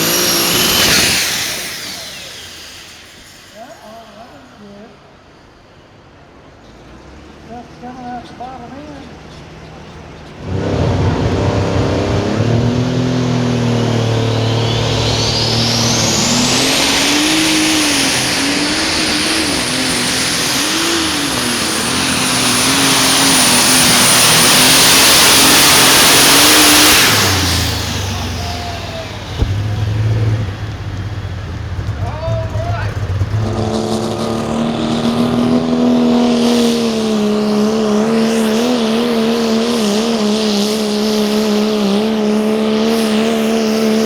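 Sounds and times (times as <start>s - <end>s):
vehicle engine running under load: 0.0s - 44.0s
high whine: 10.3s - 41.0s
sharp crack: 10.4s - 34.3s.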